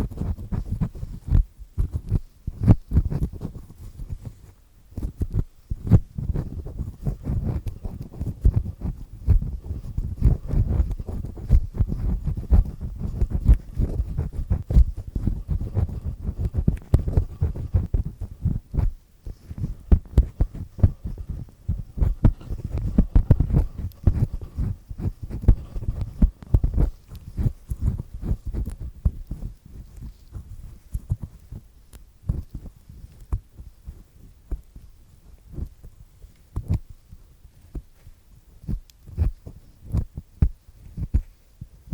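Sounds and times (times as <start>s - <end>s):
earpick scraping inside ear: 0.0s - 31.6s.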